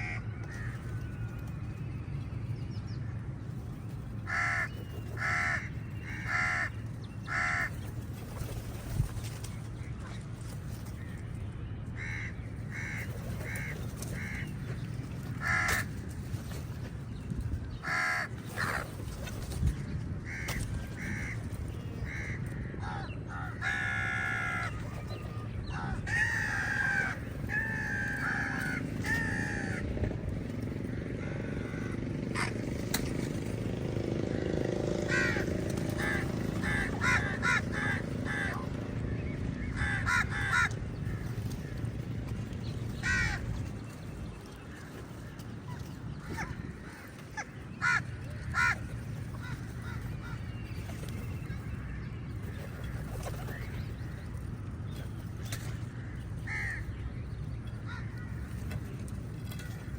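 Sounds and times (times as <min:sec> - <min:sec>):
crows cawing: 0:00.0 - 0:00.8, 0:04.2 - 0:06.7, 0:07.3 - 0:07.8, 0:12.0 - 0:14.5, 0:15.4 - 0:16.0, 0:17.8 - 0:18.8, 0:20.3 - 0:21.4, 0:22.1 - 0:24.8, 0:25.6 - 0:29.9, 0:30.9 - 0:32.7, 0:35.0 - 0:38.6, 0:39.6 - 0:41.2, 0:43.0 - 0:43.5, 0:47.8 - 0:50.4, 0:56.0 - 0:56.9, 0:57.9 - 0:58.4
low background rumble: 0:00.0 - 0:34.1, 0:35.0 - 0:59.9.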